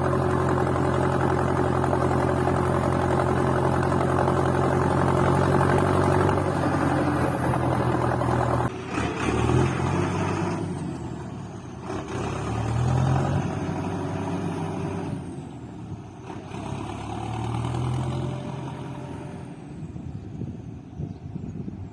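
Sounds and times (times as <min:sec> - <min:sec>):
tractor diesel engine running: 0:00.0 - 0:21.0.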